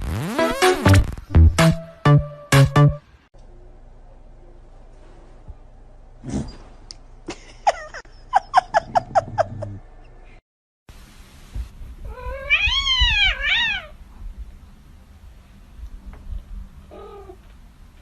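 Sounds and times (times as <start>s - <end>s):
cat meowing: 12.1s - 14.0s.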